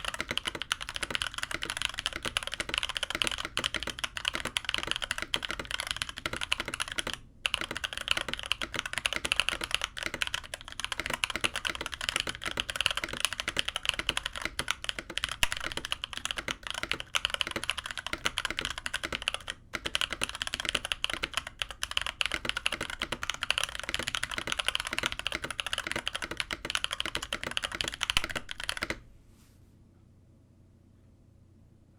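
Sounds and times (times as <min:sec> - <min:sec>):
fast mechanical keyboard typing: 0:00.0 - 0:29.0.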